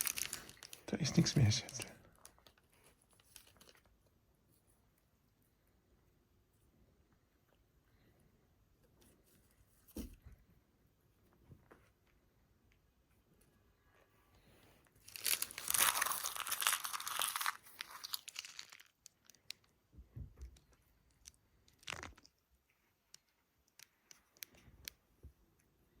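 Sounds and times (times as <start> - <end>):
wrapper crumpling: 0.0 - 3.9, 15.0 - 19.7, 21.1 - 22.4.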